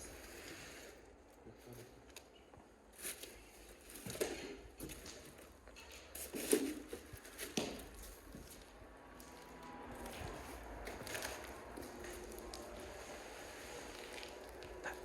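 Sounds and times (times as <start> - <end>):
light knocks and scuffs: 4.0 - 8.6.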